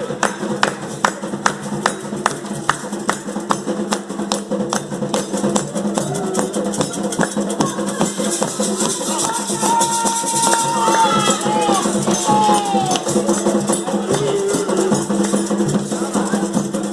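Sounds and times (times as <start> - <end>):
ceremonial percussion: 0.0 - 16.9
sustained voices singing: 5.7 - 16.9.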